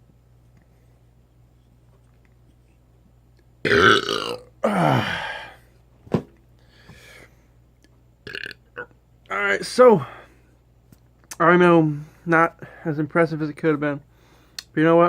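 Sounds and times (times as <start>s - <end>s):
man burping: 3.6s - 5.6s, 8.2s - 9.0s.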